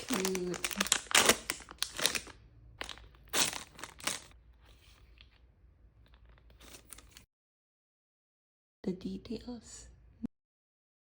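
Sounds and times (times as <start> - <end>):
bag tearing open: 0.0 - 4.4
plastic bag crinkling: 0.0 - 5.4, 6.0 - 7.3.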